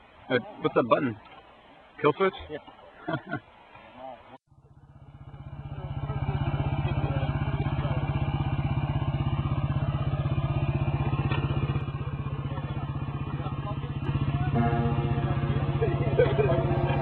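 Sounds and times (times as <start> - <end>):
motorcycle engine idling: 4.5 - 17.0.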